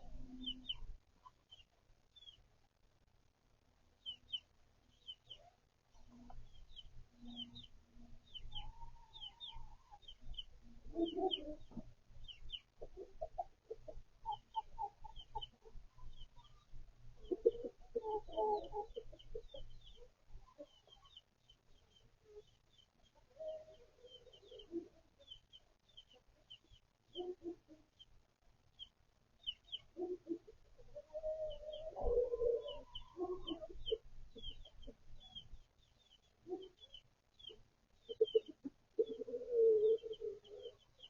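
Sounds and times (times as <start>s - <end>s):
chickens clucking: 0.0s - 2.4s, 4.0s - 41.0s
chicks peeping: 0.1s - 2.4s, 4.0s - 41.0s.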